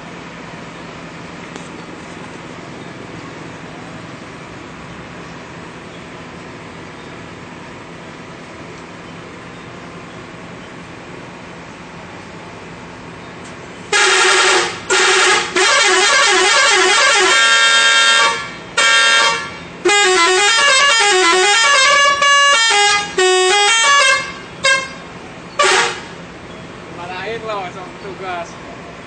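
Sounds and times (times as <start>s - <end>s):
bus musical horn tune: 13.9s - 26.3s.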